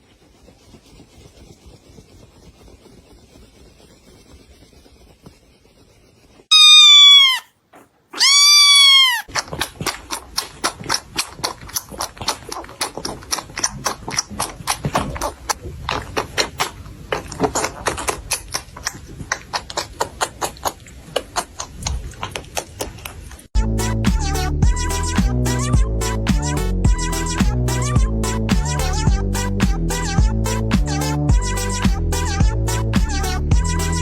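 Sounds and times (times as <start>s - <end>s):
cat meowing: 6.5s - 7.5s, 8.2s - 9.3s.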